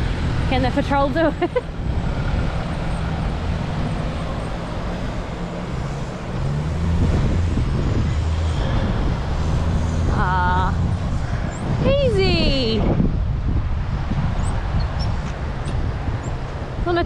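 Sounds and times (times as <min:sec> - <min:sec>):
vehicle engine under load: 0:00.0 - 0:17.0.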